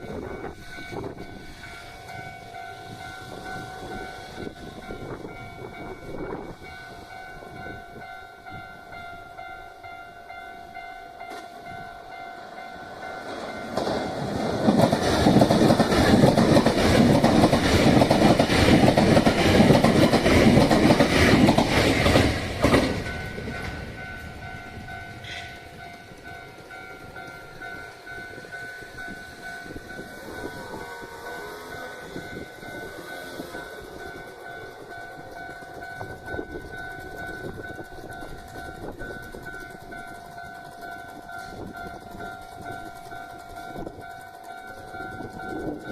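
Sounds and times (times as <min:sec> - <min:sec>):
crossing warning bells ringing: 0:00.0 - 0:45.9
train wheels on rails: 0:00.0 - 0:45.9.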